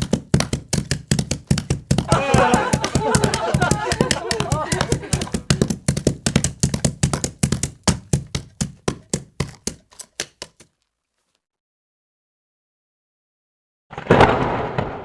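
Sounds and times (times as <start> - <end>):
sharp taps: 0.0 - 10.7.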